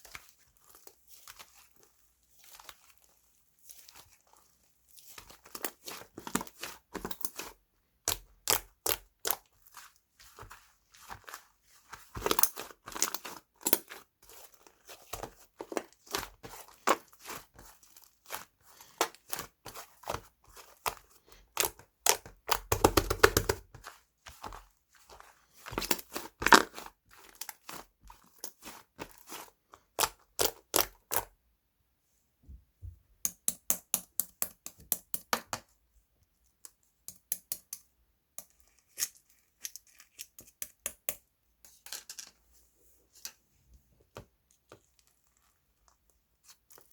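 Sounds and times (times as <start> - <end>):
crinkly material crinkling: 0.0 - 7.6, 44.0 - 46.9.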